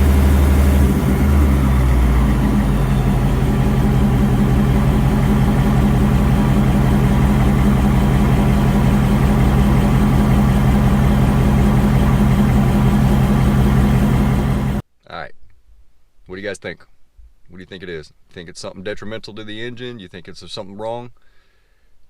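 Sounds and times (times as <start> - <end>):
car engine running: 0.0 - 14.8
clanky engine ticking: 0.0 - 14.8.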